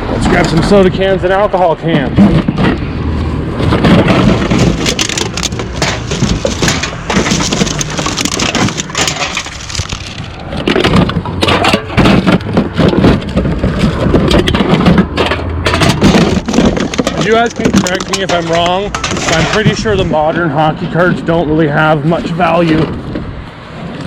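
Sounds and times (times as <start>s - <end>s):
aluminium cans crinkling and clattering: 3.6s - 20.3s.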